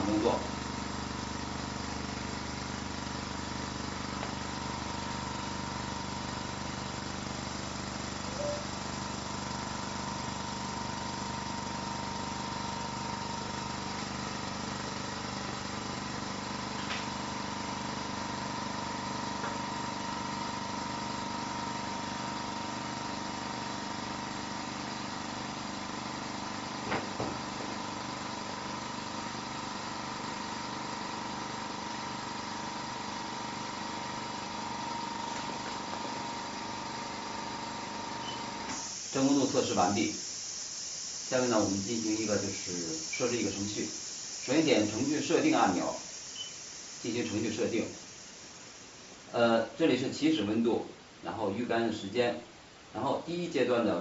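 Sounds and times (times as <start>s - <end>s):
vacuum pump humming: 0.0s - 49.3s.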